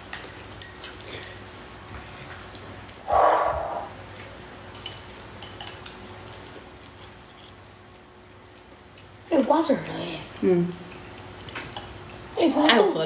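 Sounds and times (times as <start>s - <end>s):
utensils clinking against dishes: 0.0s - 1.6s
scraping noise: 3.0s - 4.1s.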